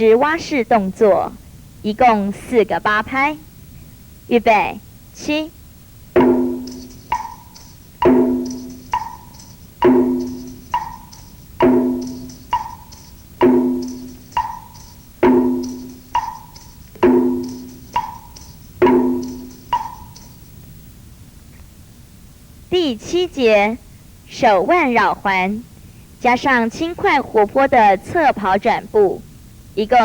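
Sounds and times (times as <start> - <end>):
low ringing drum strike: 6.2 - 20.2
faint jingle: 6.2 - 20.6.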